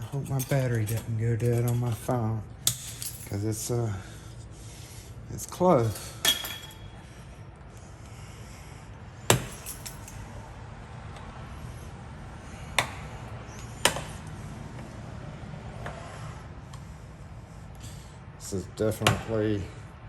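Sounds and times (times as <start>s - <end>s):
tool clinking on metal hardware: 0.0s - 3.7s, 5.8s - 7.0s, 9.3s - 10.2s, 18.9s - 19.4s.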